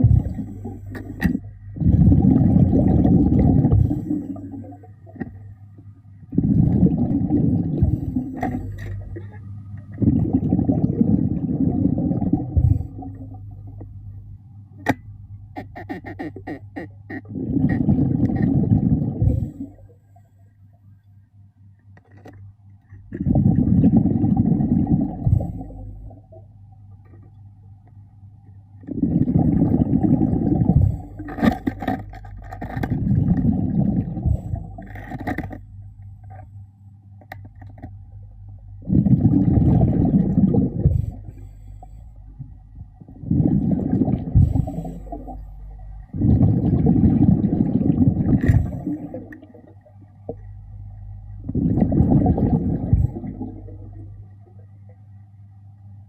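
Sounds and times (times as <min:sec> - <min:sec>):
diver exhaling bubbles underwater: 0:00.0 - 0:05.4, 0:06.3 - 0:13.8, 0:15.8 - 0:19.9, 0:23.1 - 0:26.4, 0:28.8 - 0:35.6, 0:38.8 - 0:50.4, 0:51.4 - 0:54.2
low hum: 0:00.0 - 0:56.0.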